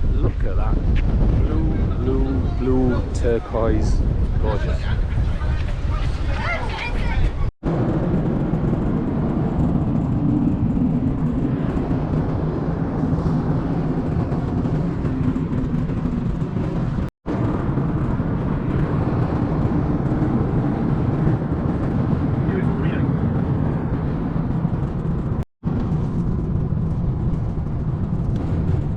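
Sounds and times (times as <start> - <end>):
wind buffeting microphone: 0.0 - 28.9.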